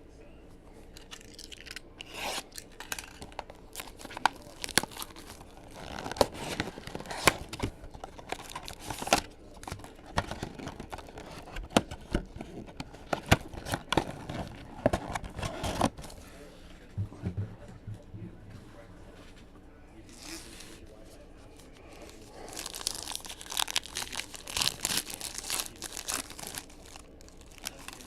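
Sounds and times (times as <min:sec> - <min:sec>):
wrappers tearing and crinkling: 0:01.0 - 0:15.9, 0:21.9 - 0:28.0.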